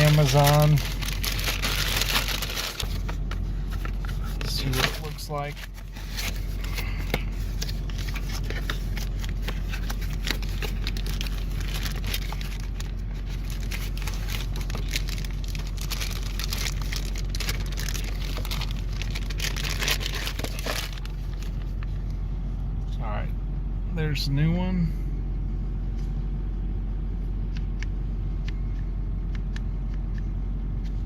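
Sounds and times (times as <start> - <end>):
packaging crinkling and tearing: 0.0 - 22.1
steady low hum: 0.0 - 31.0.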